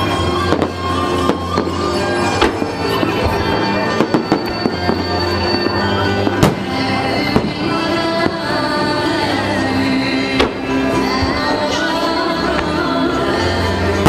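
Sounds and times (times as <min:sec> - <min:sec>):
fireworks bangs: 0:00.0 - 0:08.8
music with long held notes: 0:00.0 - 0:14.0.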